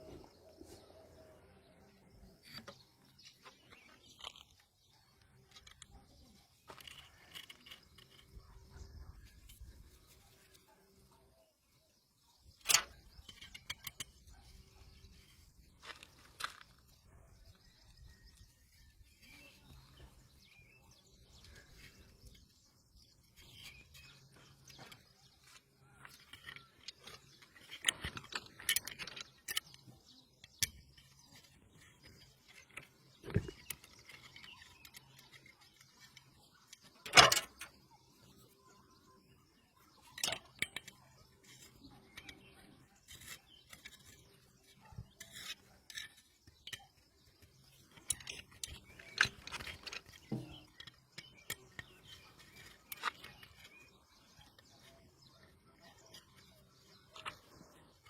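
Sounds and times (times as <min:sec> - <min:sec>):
metal tools clinking and knocking: 0:12.5 - 0:15.4, 0:23.2 - 0:38.3, 0:40.0 - 0:58.0.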